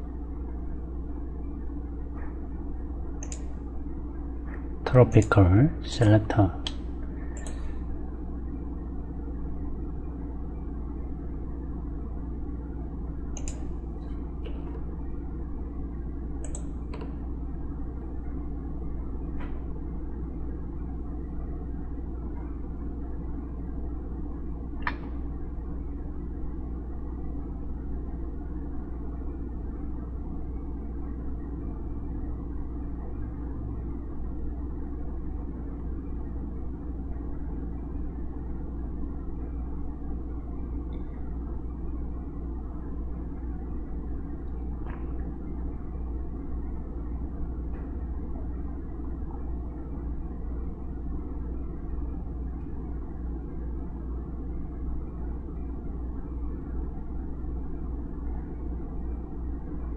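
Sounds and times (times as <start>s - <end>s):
low background hum: 0.0s - 59.9s
computer mouse clicks: 3.2s - 3.6s, 7.4s - 7.8s, 13.3s - 14.8s, 16.4s - 17.2s, 24.8s - 25.1s.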